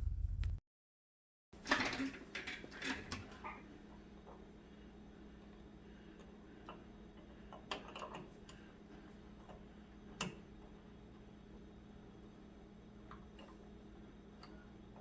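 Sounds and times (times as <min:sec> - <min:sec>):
steady low hum: 0:00.0 - 0:00.6.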